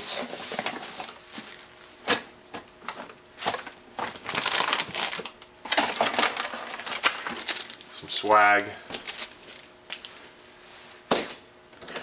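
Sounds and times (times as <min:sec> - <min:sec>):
packaging crinkling and rustling: 0:00.2 - 0:02.0, 0:02.6 - 0:10.4.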